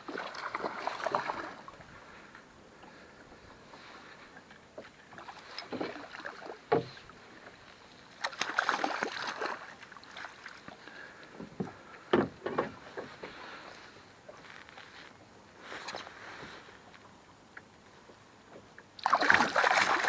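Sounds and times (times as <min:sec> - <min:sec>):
water slapping against hull: 0:00.0 - 0:01.7, 0:08.2 - 0:13.6, 0:19.0 - 0:20.0
knocks on boat: 0:06.7 - 0:07.0, 0:11.4 - 0:13.1
splashy rush of water: 0:19.0 - 0:20.0.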